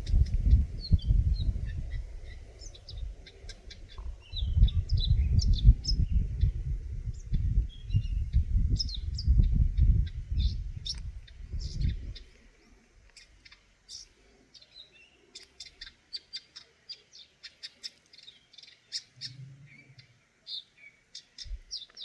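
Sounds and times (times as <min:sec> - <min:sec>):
gusty low rumble: 0:00.0 - 0:12.2.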